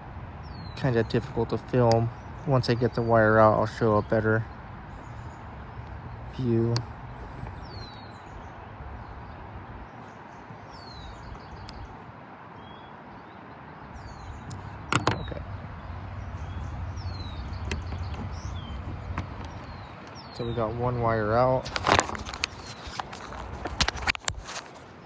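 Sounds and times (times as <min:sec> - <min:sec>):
bird chirps: 0:04.0 - 0:09.4, 0:14.0 - 0:23.4
sharp clack of pin freeing: 0:14.4 - 0:20.2
tool clicking on plastic connector: 0:14.4 - 0:20.6.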